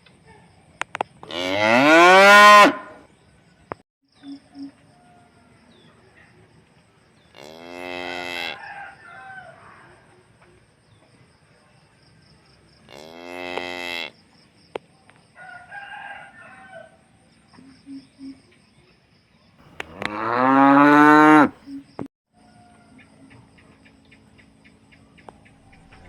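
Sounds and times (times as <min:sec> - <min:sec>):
cow mooing: 0:01.2 - 0:03.0, 0:07.4 - 0:08.6, 0:19.8 - 0:21.6.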